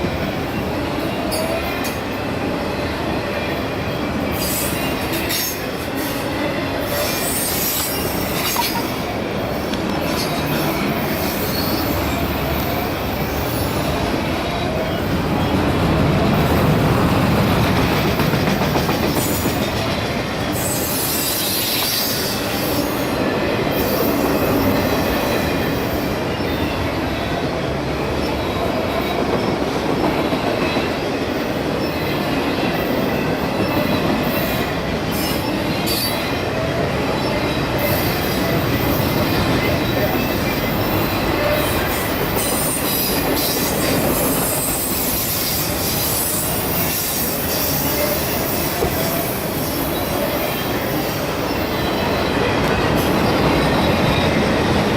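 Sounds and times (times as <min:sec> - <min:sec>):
train wheels on rails: 0:00.0 - 0:54.9.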